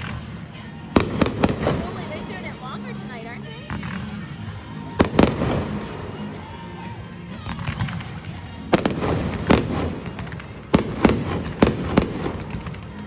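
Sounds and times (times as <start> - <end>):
fireworks crackling: 0.0 - 13.0
fireworks booming: 1.0 - 4.2, 7.4 - 13.0.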